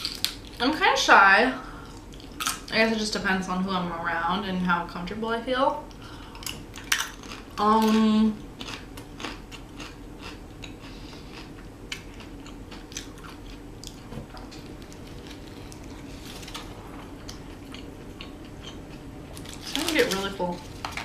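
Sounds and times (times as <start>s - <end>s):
person chewing food: 5.9s - 7.6s, 8.5s - 19.8s.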